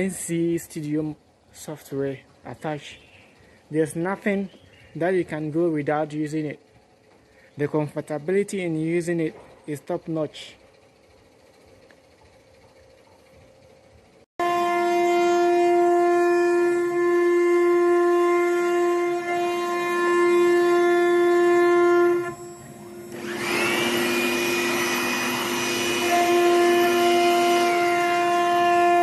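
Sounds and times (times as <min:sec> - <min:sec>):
router spindle whining: 0:14.4 - 0:29.0
router bit cutting wood: 0:19.0 - 0:29.0.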